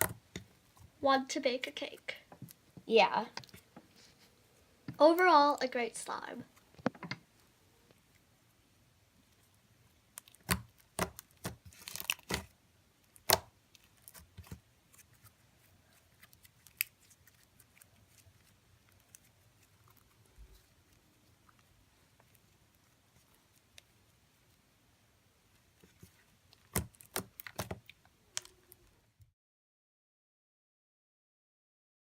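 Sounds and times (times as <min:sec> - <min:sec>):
crunchy slime crackling: 0:10.1 - 0:23.9.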